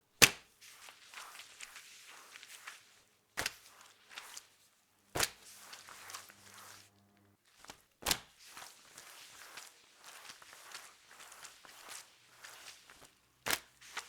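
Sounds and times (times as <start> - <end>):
sharp slaps: 0.2 - 0.5
wet mop swishing on floor: 0.2 - 14.0.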